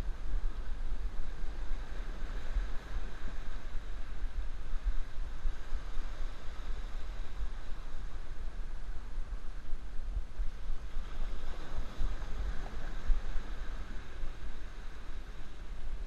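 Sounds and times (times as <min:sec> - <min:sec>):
wind buffeting microphone: 0:00.0 - 0:16.0
waves washing against jetty: 0:10.5 - 0:16.0.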